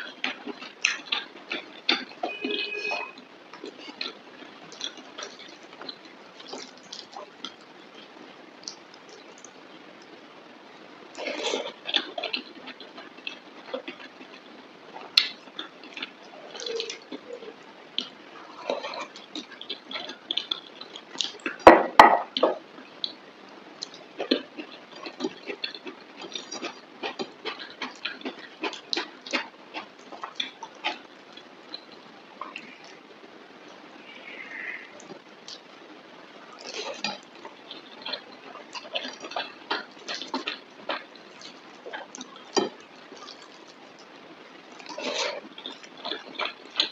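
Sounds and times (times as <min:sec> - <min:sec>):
wet chewing and lip-smacking: 0:03.6 - 0:10.1, 0:11.1 - 0:21.6, 0:23.8 - 0:33.0, 0:36.4 - 0:46.9.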